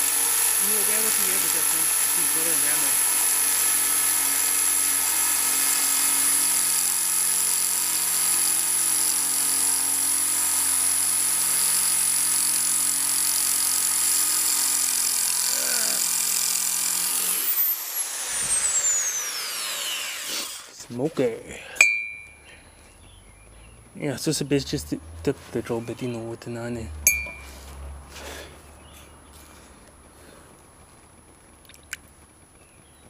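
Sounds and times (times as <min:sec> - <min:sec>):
electric drill whining: 0:00.0 - 0:20.8.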